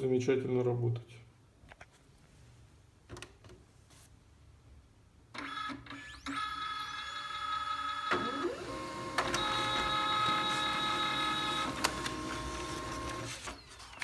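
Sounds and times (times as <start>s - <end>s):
printer motor and gear whine: 5.4s - 14.0s
printer sharp clicks: 8.1s - 13.6s.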